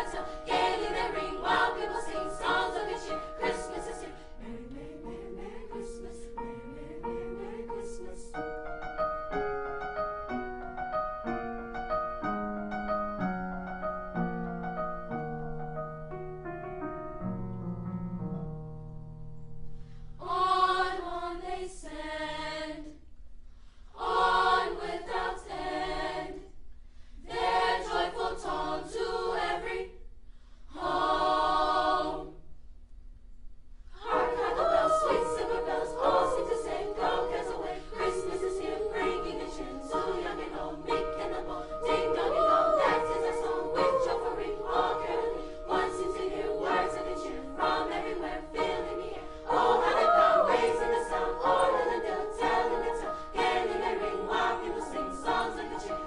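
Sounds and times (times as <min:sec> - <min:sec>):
choir of young singers: 0:00.0 - 0:11.2, 0:20.0 - 0:23.1, 0:23.8 - 0:32.6, 0:33.9 - 0:56.0
piano chord: 0:08.6 - 0:20.2.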